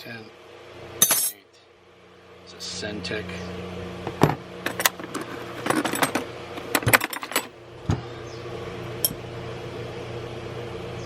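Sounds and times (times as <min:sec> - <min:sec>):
steady low hum: 0:00.0 - 0:11.0
hand tools clinking in toolbox: 0:04.7 - 0:07.5.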